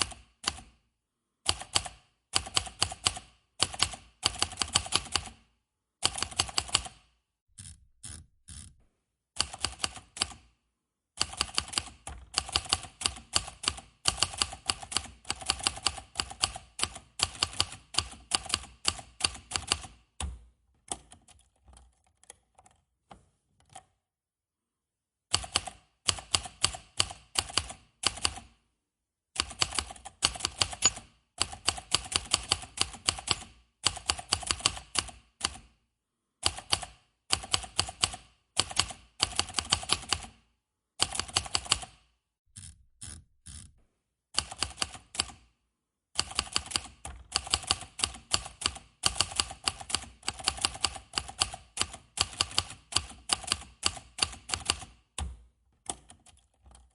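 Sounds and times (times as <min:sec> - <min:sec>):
typewriter keys clacking: 0:29.5 - 0:33.4.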